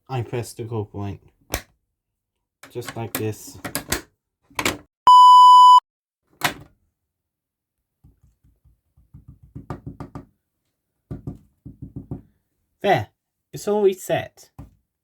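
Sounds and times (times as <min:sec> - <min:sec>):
alarm button click: 0:05.1 - 0:05.8
electronic beep: 0:05.1 - 0:05.8.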